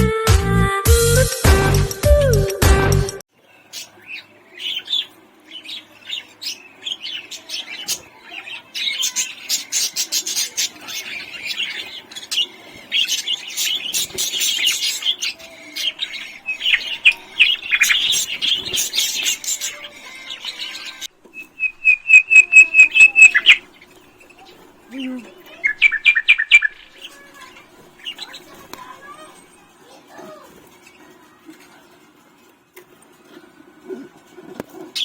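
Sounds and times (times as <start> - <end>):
music track: 0.0 - 3.2
budgerigars chirping: 3.7 - 27.2.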